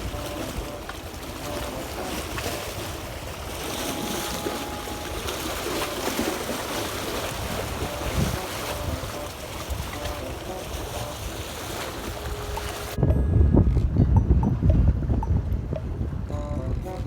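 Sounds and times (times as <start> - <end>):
waves washing on rocky shore: 0.0 - 13.0
wind buffeting microphone: 0.0 - 17.0.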